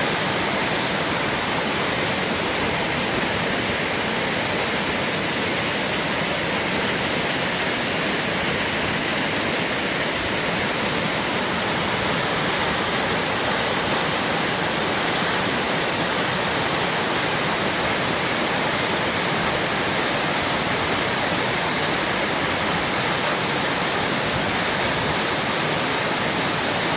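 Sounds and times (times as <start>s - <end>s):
waterfall roaring: 0.0s - 26.9s.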